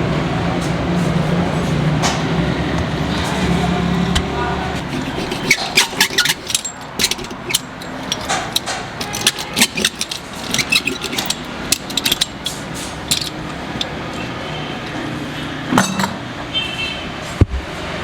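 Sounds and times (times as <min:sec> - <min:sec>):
steady background hum: 0:00.0 - 0:16.6
metal tools clicking and knocking: 0:04.8 - 0:14.0, 0:15.7 - 0:16.2.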